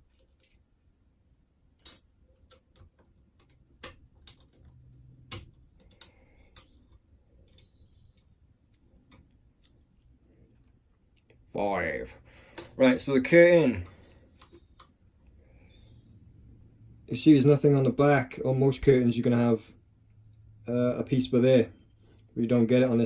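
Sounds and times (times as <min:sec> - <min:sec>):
metallic clicks of lock parts: 0:01.8 - 0:07.7.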